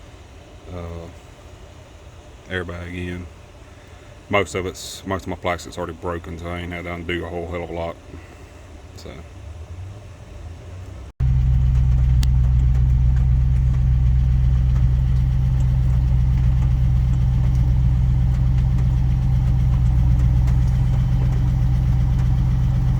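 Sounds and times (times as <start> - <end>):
car engine idling: 7.5 - 22.9.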